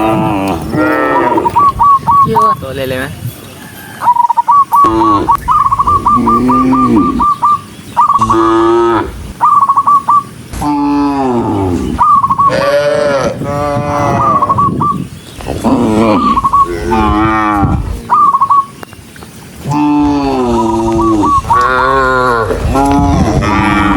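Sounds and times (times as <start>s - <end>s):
cattle mooing: 0.0s - 1.6s, 6.0s - 7.4s, 8.2s - 9.2s, 10.6s - 14.6s, 15.6s - 18.0s, 19.6s - 23.9s.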